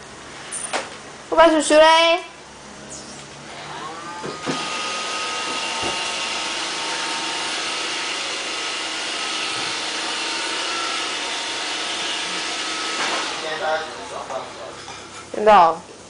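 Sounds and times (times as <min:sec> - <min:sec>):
robot vacuum whirring: 0:03.6 - 0:14.2.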